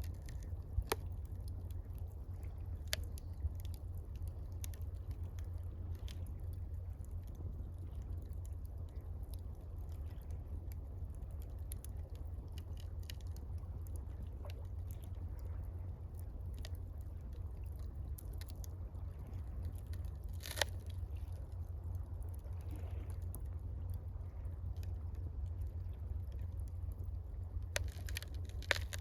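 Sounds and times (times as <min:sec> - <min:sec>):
campfire crackling: 0:00.0 - 0:22.2, 0:26.6 - 0:29.0
fire popping: 0:20.4 - 0:20.8, 0:27.8 - 0:29.0.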